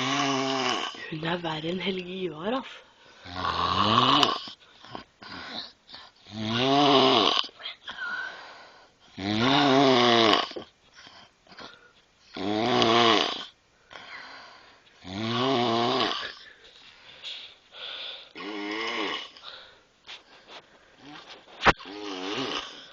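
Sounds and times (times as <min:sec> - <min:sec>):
woman snoring loudly: 0:00.0 - 0:01.3, 0:03.2 - 0:04.5, 0:05.3 - 0:07.6, 0:09.1 - 0:10.6, 0:12.3 - 0:14.4, 0:15.0 - 0:16.5, 0:18.2 - 0:19.7, 0:21.0 - 0:22.9
quiet breaths: 0:00.0 - 0:22.9.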